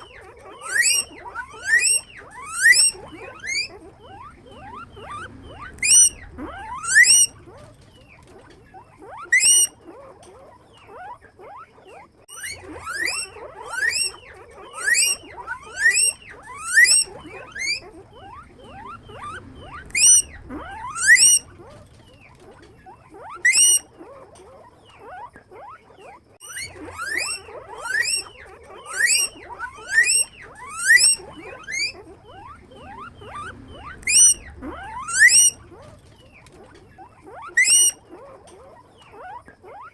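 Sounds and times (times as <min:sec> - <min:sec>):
faint overlapping squeaks: 0:00.0 - 0:39.9
guinea pigs wheeking: 0:00.0 - 0:39.9.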